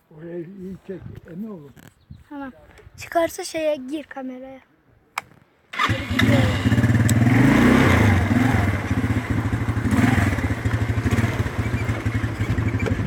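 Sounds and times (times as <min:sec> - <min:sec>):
quad bike engine revving: 0:05.8 - 0:13.0.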